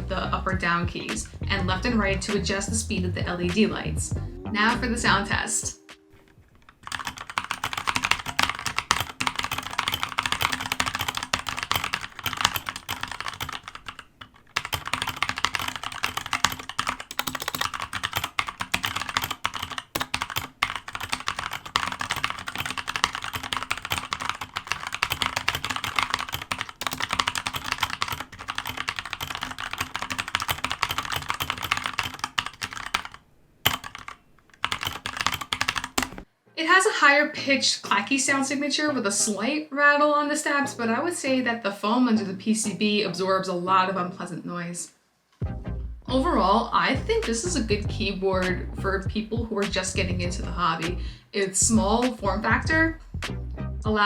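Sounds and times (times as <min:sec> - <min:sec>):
fast typing on mechanical keyboard: 0:06.6 - 0:36.3.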